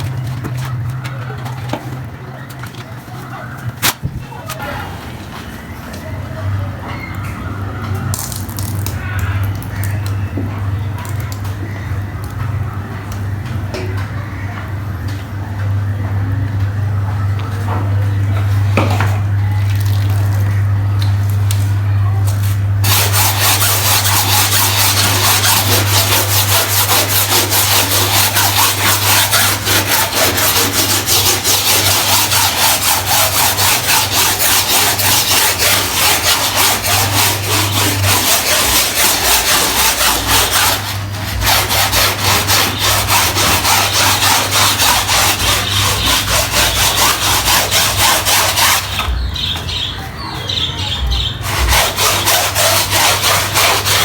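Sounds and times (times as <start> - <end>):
steady low hum: 0.0 - 54.0
stiff brush scrubbing wet carpet: 22.8 - 49.9, 51.1 - 54.0.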